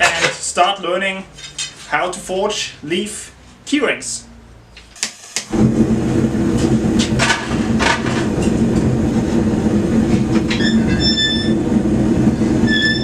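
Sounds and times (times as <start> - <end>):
forge roaring: 5.5 - 13.0
brief high-pitched squeal: 10.5 - 11.6, 12.6 - 13.0.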